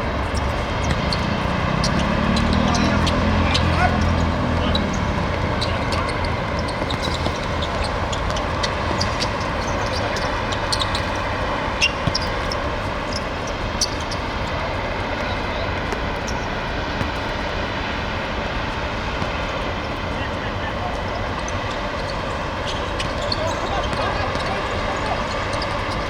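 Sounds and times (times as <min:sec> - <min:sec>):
outdoor rumble and hiss: 0:00.0 - 0:26.0.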